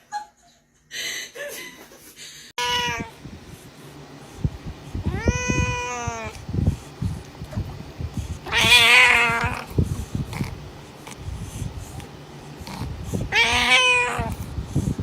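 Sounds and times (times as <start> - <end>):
cat meowing: 2.6 - 3.1, 5.1 - 6.3, 8.5 - 9.7, 13.3 - 14.4.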